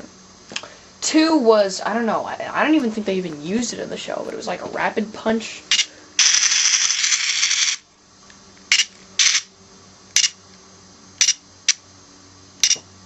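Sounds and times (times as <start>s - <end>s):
toy electronic harsh bursts: 5.7s - 7.8s, 8.7s - 9.5s, 10.2s - 10.4s, 11.2s - 11.4s.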